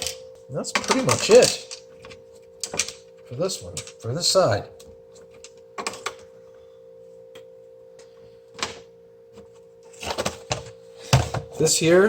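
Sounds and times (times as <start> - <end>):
clicks and knocks of parts handled: 0.0 - 4.0, 4.8 - 6.3, 8.6 - 11.5
steady hum: 0.0 - 12.0.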